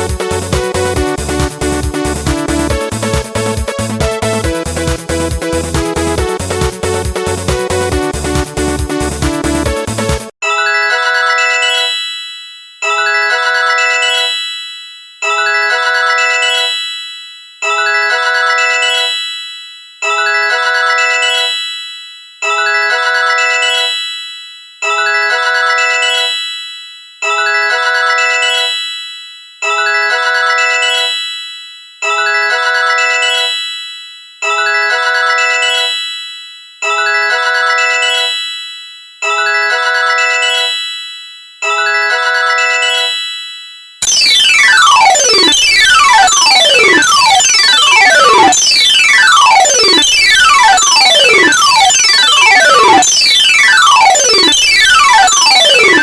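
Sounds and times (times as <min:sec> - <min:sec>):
polyphonic ringtone melody: 0:10.4 - 0:17.0, 0:17.6 - 0:19.4, 0:20.0 - 0:56.0.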